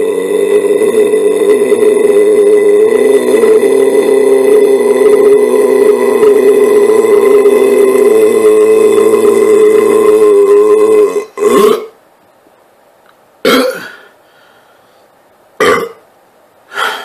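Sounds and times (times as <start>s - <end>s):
man belching: 0.0s - 12.0s, 13.4s - 14.1s, 15.6s - 16.0s.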